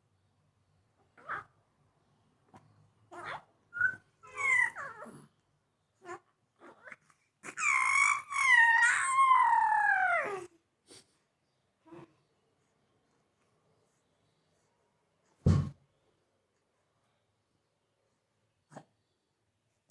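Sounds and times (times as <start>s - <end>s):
baby crying: 3.1s - 5.2s, 6.0s - 10.5s
baby squealing: 3.2s - 5.0s, 6.8s - 10.5s.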